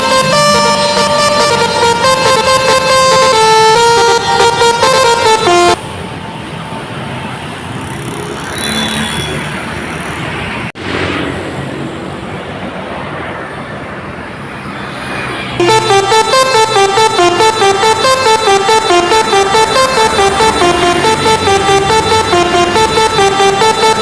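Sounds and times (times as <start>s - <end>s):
bus horn playing a melody: 0.0s - 5.9s, 15.6s - 24.0s
road traffic with vehicles passing: 0.0s - 24.0s.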